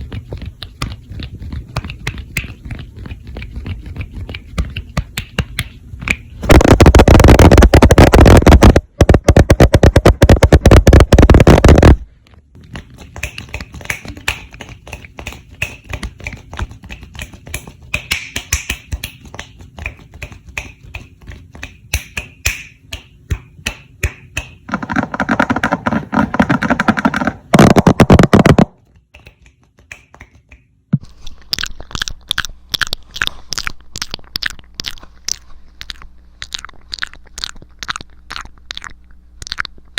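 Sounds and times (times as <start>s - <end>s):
rapid sharp clicks and taps: 0.0s - 12.0s, 12.6s - 30.8s.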